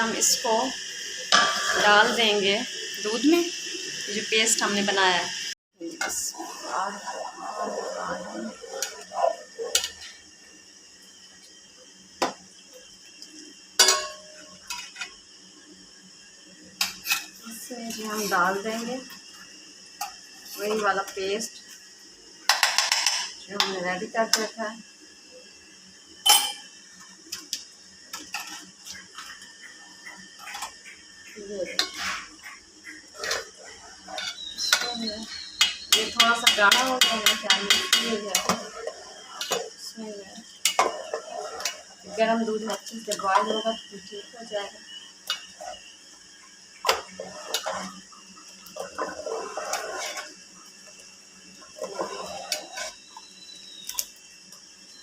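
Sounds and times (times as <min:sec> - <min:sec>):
metal ladle scraping a pot: 0:40.6 - 0:42.0, 0:46.8 - 0:48.0, 0:48.8 - 0:50.4, 0:51.8 - 0:53.2.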